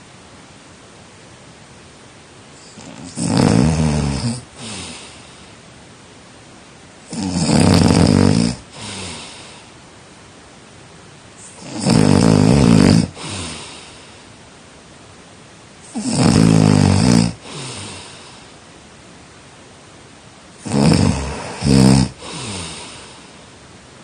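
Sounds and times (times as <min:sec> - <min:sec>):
person snoring: 0:02.6 - 0:05.6, 0:07.1 - 0:09.7, 0:11.4 - 0:14.2, 0:15.8 - 0:18.6, 0:20.6 - 0:23.4.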